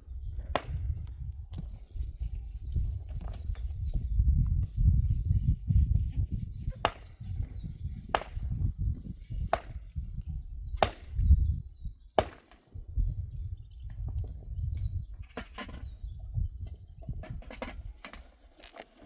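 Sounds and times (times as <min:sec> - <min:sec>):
sharp knocks: 0:00.6 - 0:00.9, 0:06.9 - 0:07.3, 0:08.2 - 0:08.5, 0:09.6 - 0:09.9, 0:10.8 - 0:11.2.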